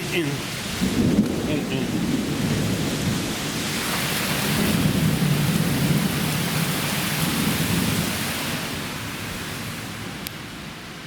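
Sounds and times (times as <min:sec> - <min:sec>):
heavy rain downpour: 0:00.0 - 0:11.0.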